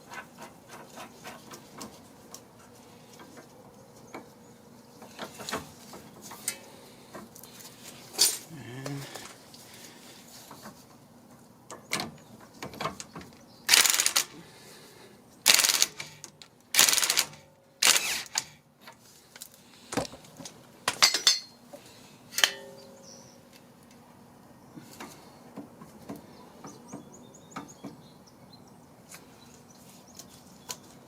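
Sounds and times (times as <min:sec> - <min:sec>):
hand ratchet clicking: 0:13.7 - 0:14.3, 0:15.5 - 0:16.1, 0:16.8 - 0:18.5
metallic clinks of tools: 0:21.0 - 0:21.6.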